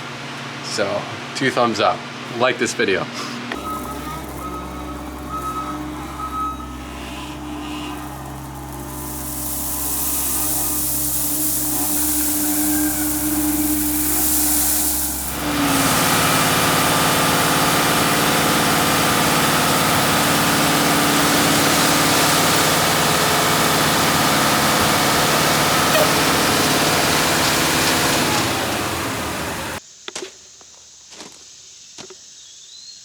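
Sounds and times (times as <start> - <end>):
machine engine running: 3.6 - 29.8.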